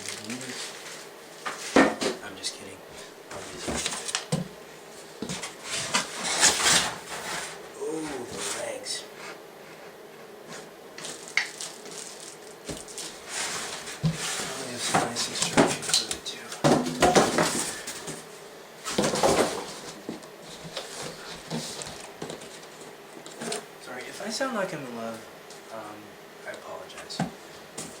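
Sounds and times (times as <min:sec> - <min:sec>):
packaging rustling: 0:00.0 - 0:01.0, 0:11.0 - 0:14.5.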